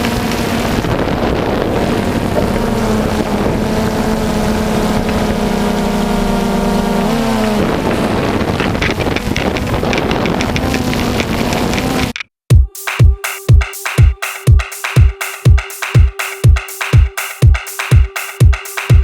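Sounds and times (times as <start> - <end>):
wind buffeting microphone: 0.0 - 12.1
motorboat engine running: 0.0 - 12.2.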